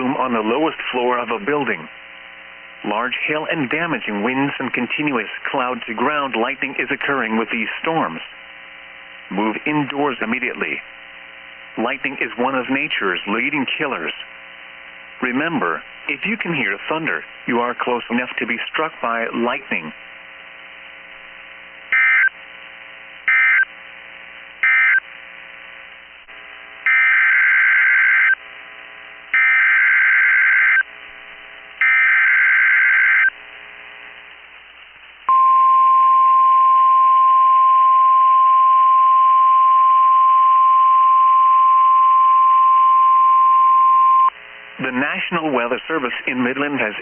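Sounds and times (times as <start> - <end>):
steady warning alarm tone: 21.9 - 22.4, 23.3 - 23.7, 24.6 - 25.0, 26.9 - 28.4, 29.3 - 30.8, 31.8 - 33.3.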